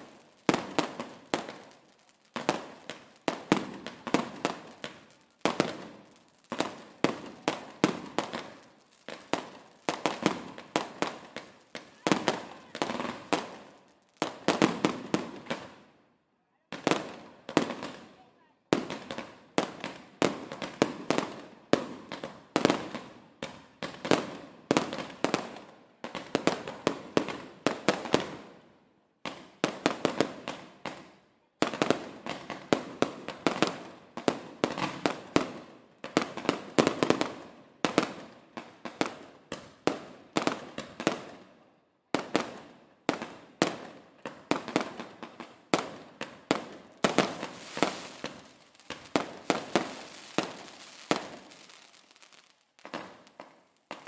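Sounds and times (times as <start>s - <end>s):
fireworks banging: 45.8s - 54.0s.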